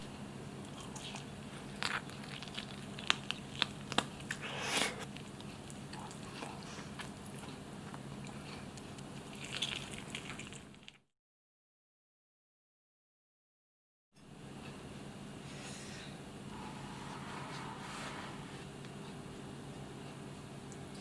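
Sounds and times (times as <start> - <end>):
person chewing and biting: 0.6 - 11.0.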